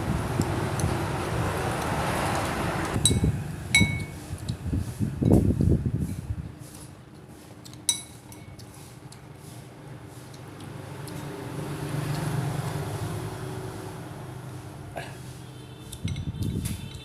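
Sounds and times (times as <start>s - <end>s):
passing traffic rumble: 0.0s - 6.5s, 10.0s - 17.0s
spoon clinking against ceramic bowl: 3.0s - 4.2s, 7.8s - 8.6s.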